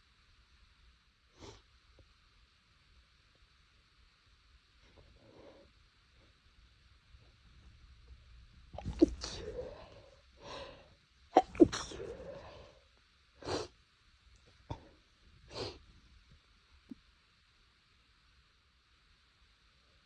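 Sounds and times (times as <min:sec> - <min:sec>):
person stifling sneezes: 0:08.8 - 0:10.6, 0:11.4 - 0:12.6.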